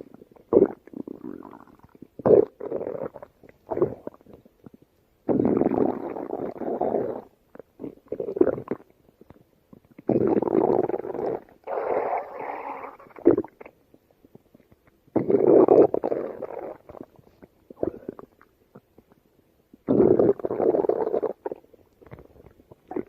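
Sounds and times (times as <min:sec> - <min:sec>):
stomach growling and gurgling: 0:00.0 - 0:23.0.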